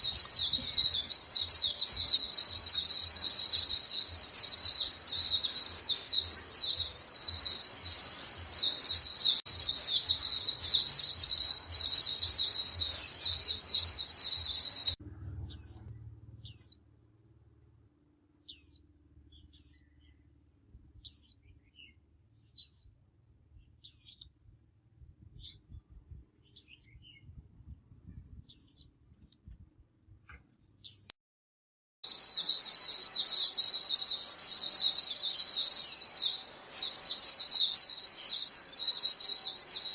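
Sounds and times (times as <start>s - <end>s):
flock of birds twittering: 0.0s - 16.8s, 32.1s - 39.9s
sharp bird calls falling in pitch: 0.0s - 17.0s.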